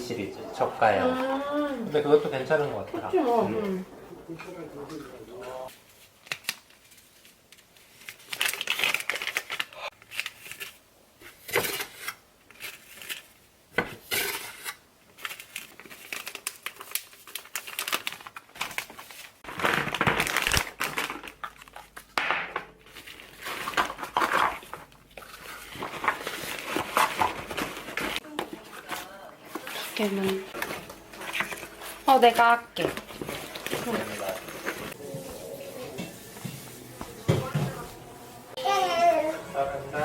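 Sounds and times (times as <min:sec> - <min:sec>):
wrapping crinkling and rustling: 0:04.4 - 0:37.5.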